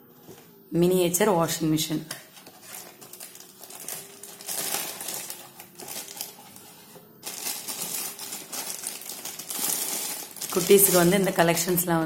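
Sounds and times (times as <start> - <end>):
plastic rustling: 2.3 - 11.9.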